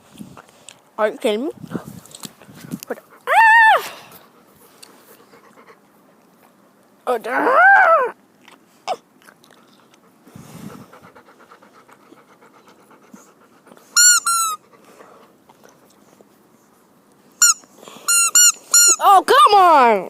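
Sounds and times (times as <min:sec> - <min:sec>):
puppy panting: 0:04.2 - 0:06.6, 0:08.9 - 0:16.9
puppy squealing: 0:07.3 - 0:08.2.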